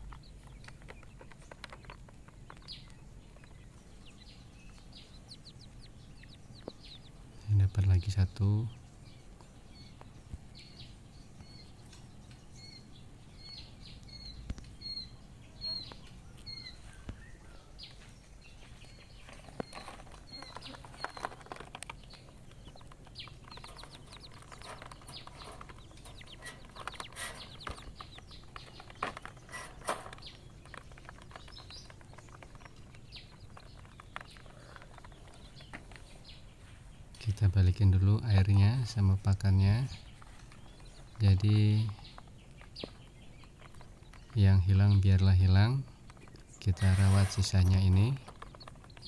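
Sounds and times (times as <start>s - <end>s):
chicks peeping: 0.0s - 49.0s
rustling and fluttering: 19.1s - 36.8s, 41.9s - 44.4s, 45.9s - 49.0s.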